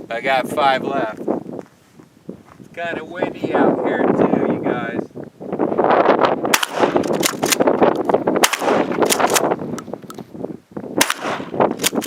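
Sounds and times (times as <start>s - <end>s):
wind buffeting microphone: 0.0s - 12.0s
shotgun shots: 6.5s - 7.7s, 8.4s - 9.5s, 11.0s - 12.0s.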